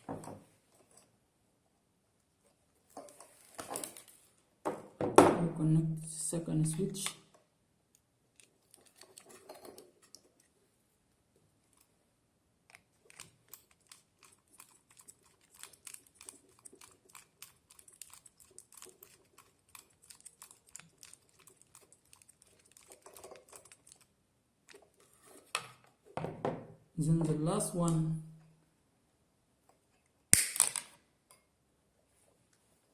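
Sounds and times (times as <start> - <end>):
rapid small clicks and scrapes: 8.3 - 10.6, 12.7 - 25.9.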